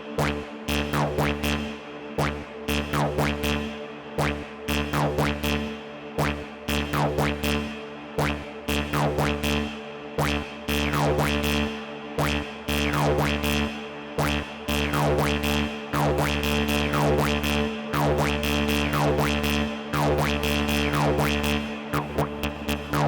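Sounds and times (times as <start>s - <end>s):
low synth drone: 16.2s - 23.0s
squelchy synth filter sweeps: 22.0s - 23.0s.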